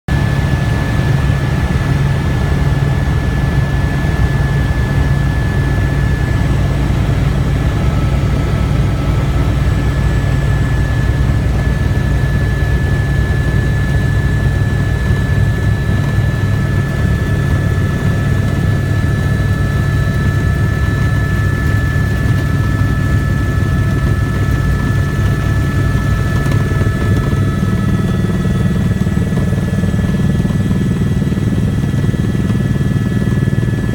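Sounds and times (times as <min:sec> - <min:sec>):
helicopter low drone: 0:00.1 - 0:33.9.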